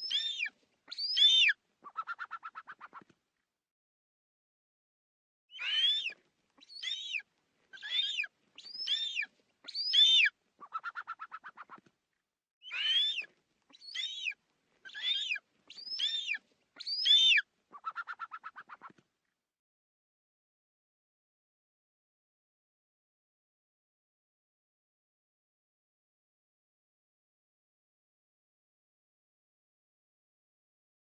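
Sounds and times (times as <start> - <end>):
eagle screeches: 5.6 - 7.2, 7.8 - 10.3, 12.7 - 17.4.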